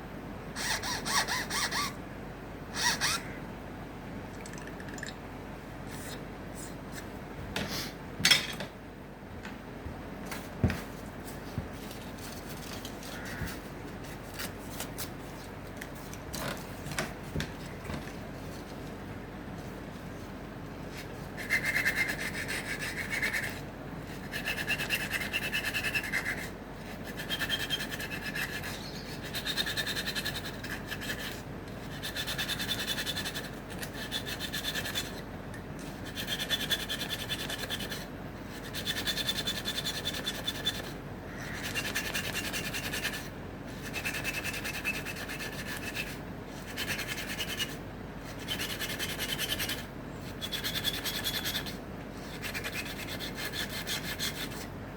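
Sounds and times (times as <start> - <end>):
hand file rasping on wood: 0.6 - 1.9, 21.4 - 23.6, 24.2 - 35.2, 36.0 - 40.9, 41.6 - 47.8, 48.4 - 54.7.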